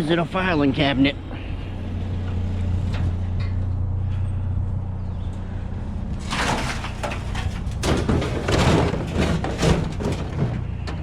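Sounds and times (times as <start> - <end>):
loud scraping and rattling: 6.1 - 11.0.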